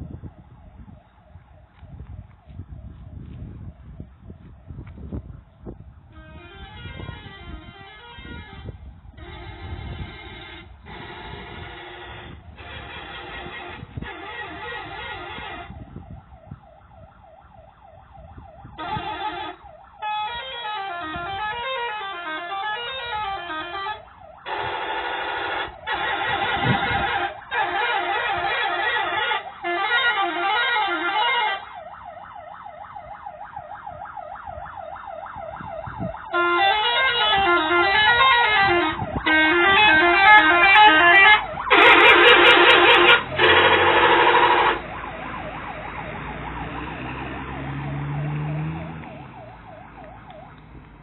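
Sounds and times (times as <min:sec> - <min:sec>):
musical bus air horn: 0:06.1 - 0:15.8, 0:18.8 - 0:31.7, 0:36.3 - 0:44.8.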